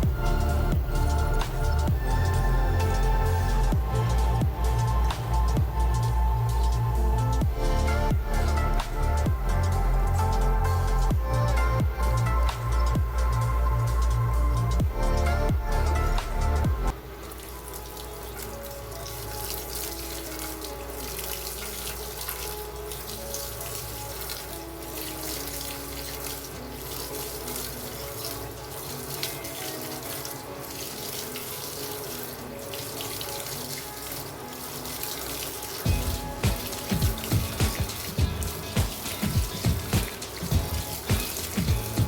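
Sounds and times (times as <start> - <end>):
loud music beat: 0.0 - 16.9, 35.9 - 42.0
loud music: 0.0 - 17.0, 35.9 - 42.0
water rushing into washing machine: 0.0 - 42.0.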